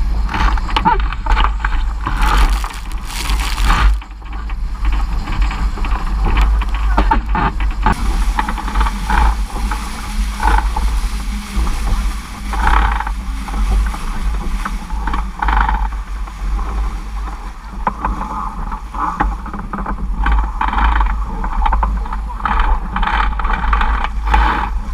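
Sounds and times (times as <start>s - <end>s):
water splashing against hull: 2.0s - 4.3s, 7.9s - 20.6s.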